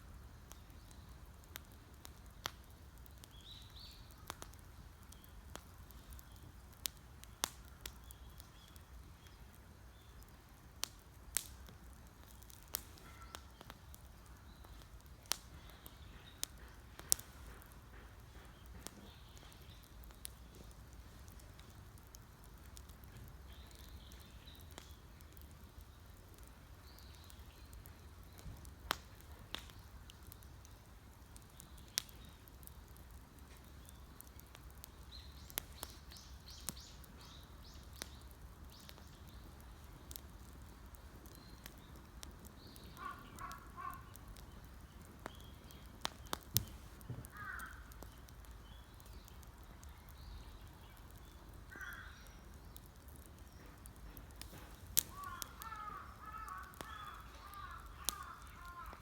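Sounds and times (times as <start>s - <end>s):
campfire crackling and popping: 0.0s - 59.0s
birds calling: 42.6s - 44.7s, 45.3s - 49.2s, 54.5s - 59.0s.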